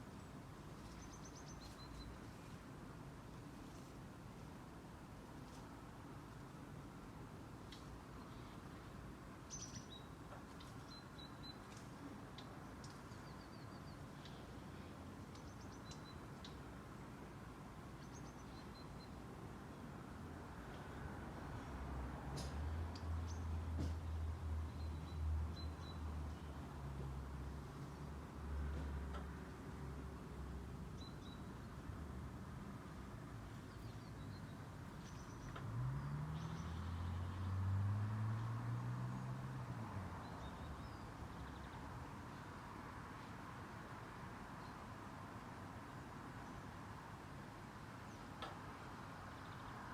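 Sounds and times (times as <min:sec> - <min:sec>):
small songbird chirping: 0:00.2 - 0:02.5, 0:09.5 - 0:14.5, 0:15.3 - 0:16.7, 0:18.0 - 0:19.3, 0:22.9 - 0:26.6, 0:33.5 - 0:37.7.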